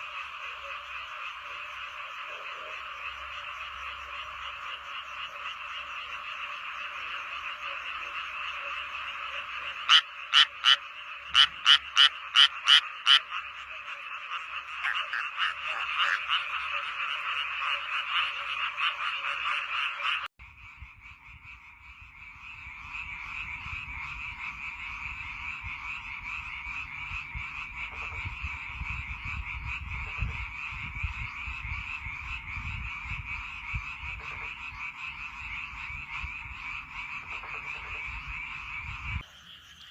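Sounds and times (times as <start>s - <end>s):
frog loud sharp calls: 0.0s - 20.3s
frog chorus: 0.0s - 39.9s.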